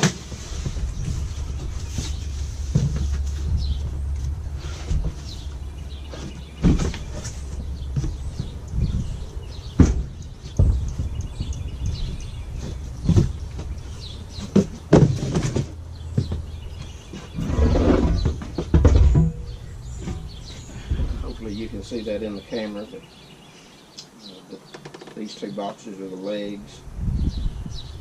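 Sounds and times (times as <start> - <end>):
knocks and thumps: 0.0 - 22.0
scraping: 0.0 - 22.7
low rumble: 0.3 - 14.4.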